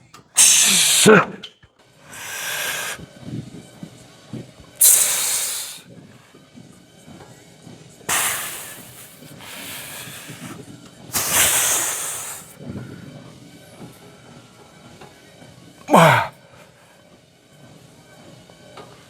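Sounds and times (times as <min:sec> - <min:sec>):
person exhaling hard through teeth: 0:00.4 - 0:01.4, 0:02.1 - 0:03.0, 0:04.8 - 0:05.8, 0:08.1 - 0:12.6, 0:15.9 - 0:16.4.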